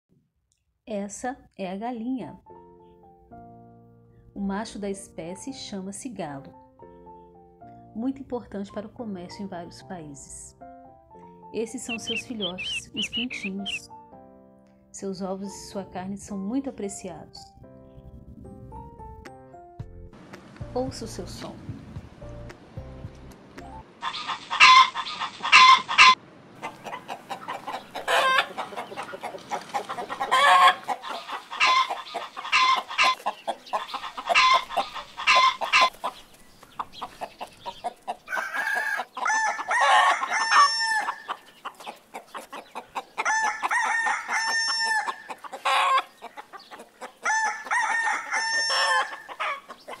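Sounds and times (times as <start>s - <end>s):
chickens clucking: 11.8s - 13.9s, 24.0s - 50.0s
rooster crowing: 24.0s - 26.2s, 27.9s - 28.8s, 30.2s - 33.2s, 38.3s - 41.3s, 43.2s - 46.1s, 47.2s - 49.7s.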